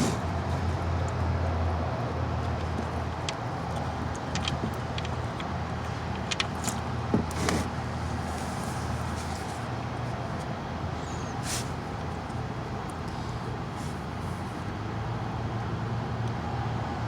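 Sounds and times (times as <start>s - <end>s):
sharp clicks and knocks: 2.6s - 7.7s.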